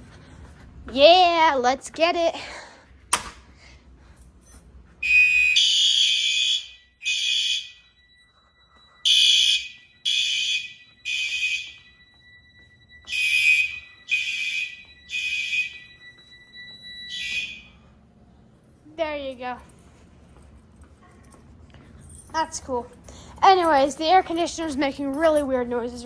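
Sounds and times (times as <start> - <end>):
fire alarm horns blasting: 5.0 - 19.7
fire alarm pull station snapping: 9.1 - 11.8, 13.1 - 17.7.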